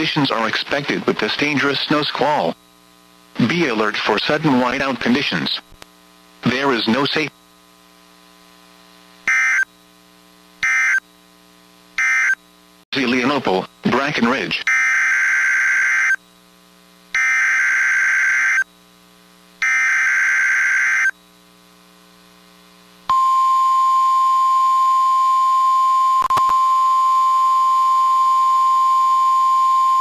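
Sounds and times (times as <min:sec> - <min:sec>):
steady warning alarm tone: 0:09.3 - 0:09.7, 0:10.6 - 0:11.0, 0:12.0 - 0:12.4, 0:14.7 - 0:16.2, 0:17.2 - 0:18.7, 0:19.6 - 0:21.2
screeching data bursts: 0:12.0 - 0:12.4, 0:17.2 - 0:18.6, 0:19.6 - 0:21.2.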